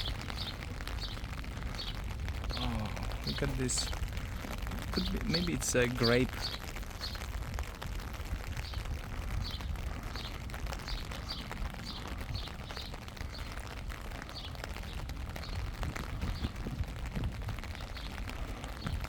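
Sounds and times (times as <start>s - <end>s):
small bird chirping: 0.0s - 4.1s
steady low rumble: 0.0s - 19.0s.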